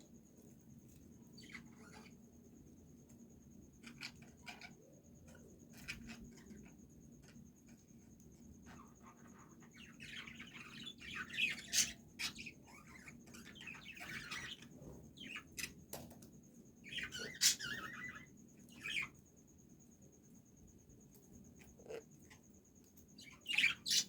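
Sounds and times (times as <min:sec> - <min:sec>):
small birds chirping: 0:00.0 - 0:24.0.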